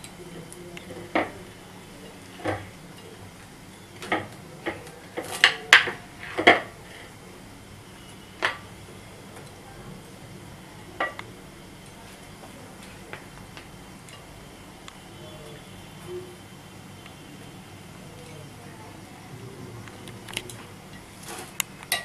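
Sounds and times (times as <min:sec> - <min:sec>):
metal utensils clinking on plate: 0:21.3 - 0:22.0.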